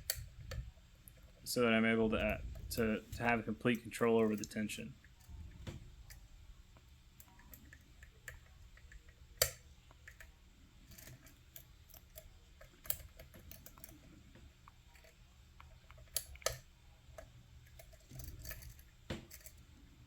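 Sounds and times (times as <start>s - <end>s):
lock pick clicking in lock: 7.2s - 10.3s.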